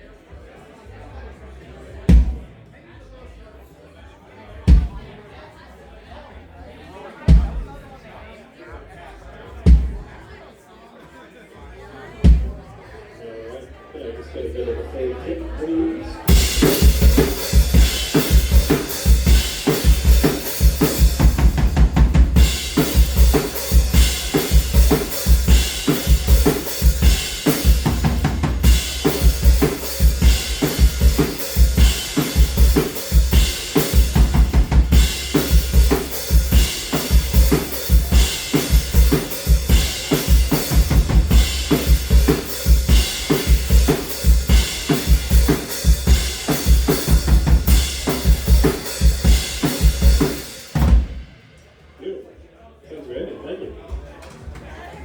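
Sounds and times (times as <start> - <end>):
kick drum thumps: 2.1 - 2.5, 4.7 - 5.2, 9.7 - 10.1
drum kit playing a groove: 2.1 - 2.6, 4.7 - 5.2, 7.3 - 8.0, 9.7 - 10.3, 12.2 - 12.8, 15.6 - 51.6.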